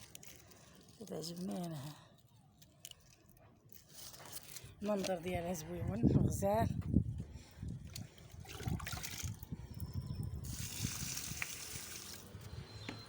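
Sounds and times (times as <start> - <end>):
water pouring onto soil: 7.9 - 9.6, 10.4 - 12.4.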